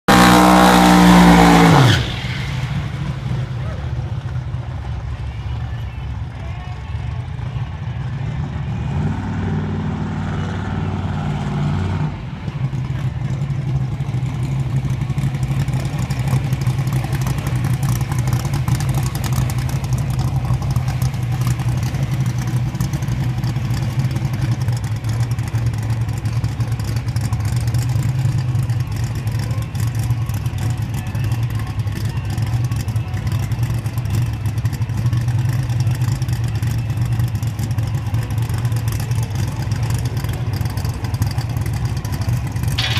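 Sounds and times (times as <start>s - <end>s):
car engine running: 12.1s - 42.9s.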